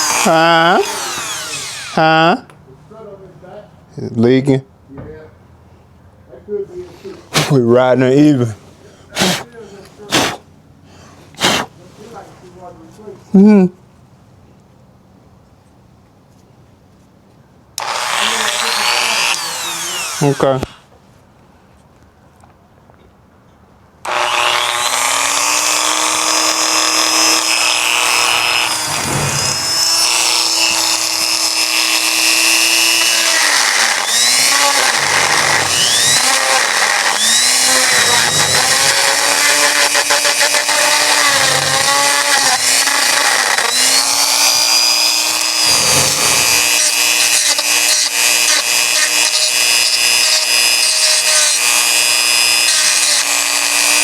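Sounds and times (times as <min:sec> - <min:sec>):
power tool motor whining: 0:00.0 - 0:02.3, 0:17.8 - 0:20.8, 0:24.0 - 0:54.0.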